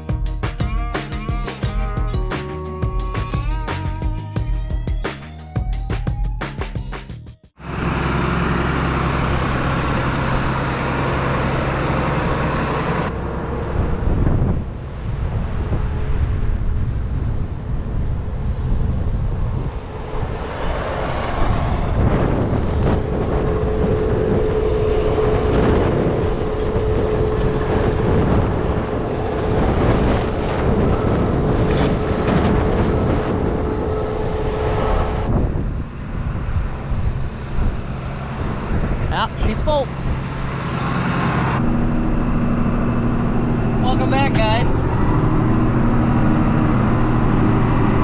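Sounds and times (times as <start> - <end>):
farm machinery engine running: 7.6 - 15.6, 19.8 - 48.0
wind buffeting microphone: 13.2 - 48.0.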